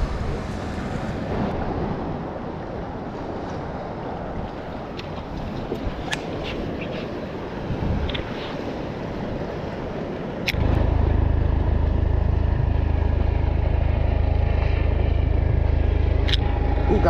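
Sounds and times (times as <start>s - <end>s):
low fluttering rumble: 0.0s - 6.0s, 9.5s - 17.0s
wind: 0.0s - 17.0s.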